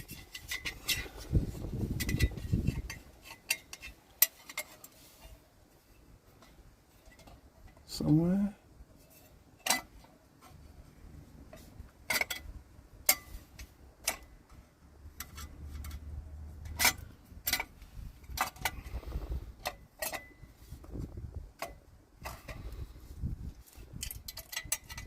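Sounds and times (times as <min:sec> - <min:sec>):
metal clicks and taps: 0:13.1 - 0:14.6.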